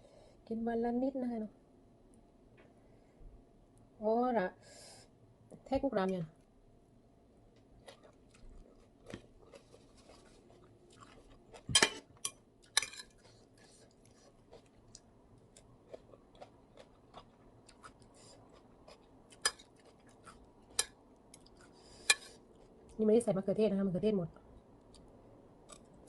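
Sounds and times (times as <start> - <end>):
person chewing: 7.6 - 23.0.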